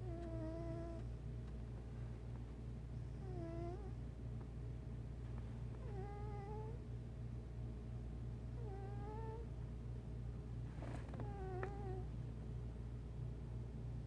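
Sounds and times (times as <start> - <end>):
steady low hum: 0.0 - 14.0
cat snoring: 3.2 - 3.9, 5.8 - 6.8, 8.6 - 9.4, 10.8 - 12.0.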